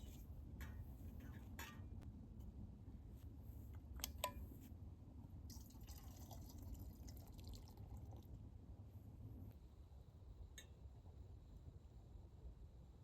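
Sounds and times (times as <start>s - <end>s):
liquid trickling: 5.5s - 8.4s.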